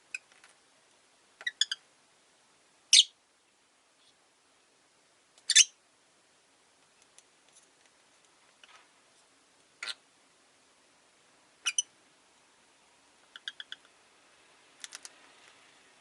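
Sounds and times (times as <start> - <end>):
lovebird chirping: 1.4 - 1.8, 2.9 - 3.2, 5.5 - 5.8, 11.6 - 11.9, 13.3 - 13.9.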